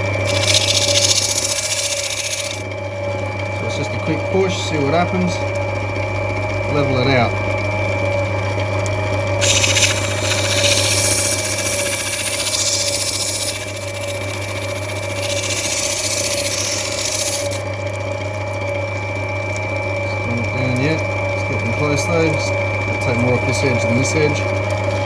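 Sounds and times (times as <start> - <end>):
grinding wheel motor hum: 0.0 - 2.9, 3.6 - 25.0
stone grinding on wet wheel: 0.2 - 2.6, 9.4 - 17.6.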